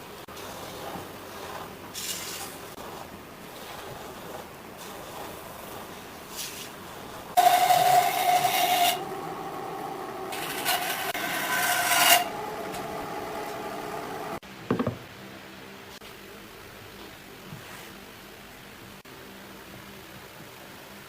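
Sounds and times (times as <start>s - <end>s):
tool rasping wood: 7.4s - 9.1s, 10.3s - 12.5s
low knock: 14.7s - 15.0s.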